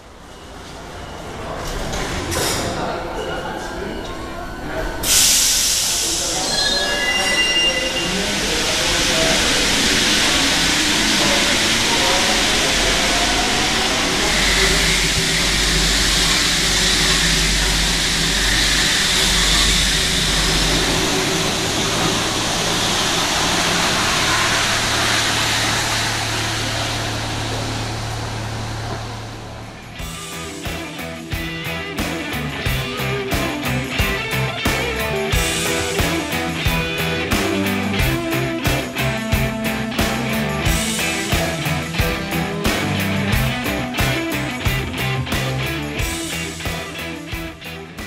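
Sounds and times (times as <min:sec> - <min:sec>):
train low hum: 0:00.0 - 0:48.0
metro train rushing hiss: 0:02.6 - 0:48.0.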